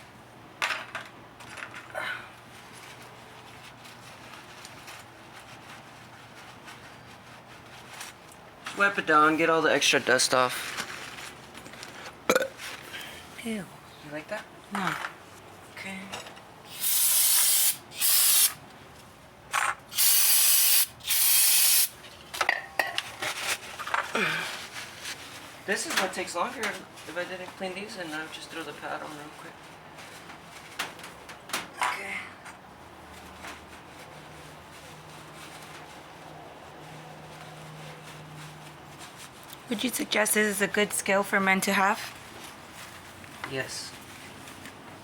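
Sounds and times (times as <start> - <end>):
aerosol spray hissing: 16.7 - 18.6, 19.9 - 21.9.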